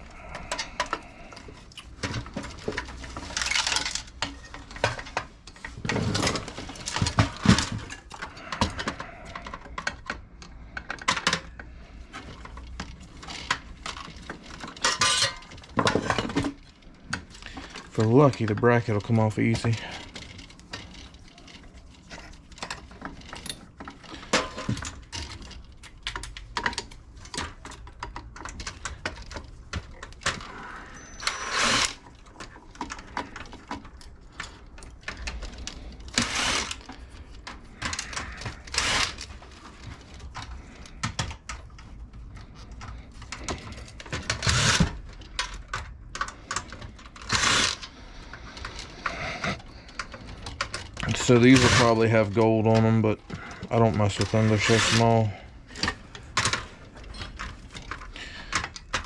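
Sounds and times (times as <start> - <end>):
hand tools clinking on metal: 14.7 - 16.4.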